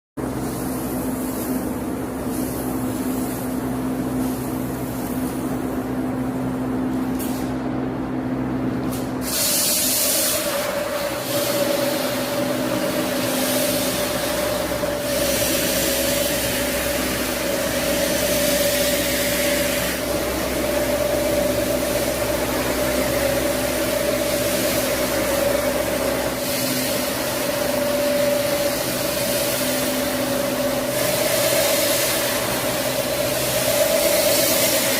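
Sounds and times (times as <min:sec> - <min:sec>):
washing machine whine: 0:00.2 - 0:34.9
hissing water spray: 0:09.0 - 0:34.9.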